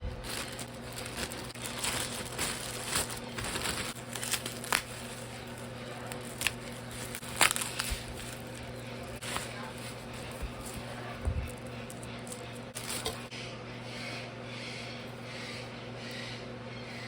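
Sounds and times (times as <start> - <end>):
packaging crinkling and rustling: 0.0 - 13.3
packaging tearing: 0.1 - 10.9.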